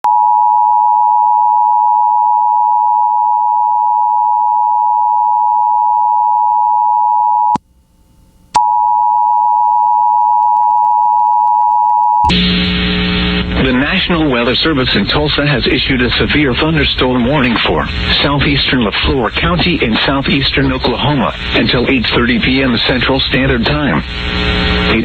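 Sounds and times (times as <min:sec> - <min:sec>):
two-tone alarm tone: 0:00.1 - 0:07.6, 0:08.6 - 0:13.3.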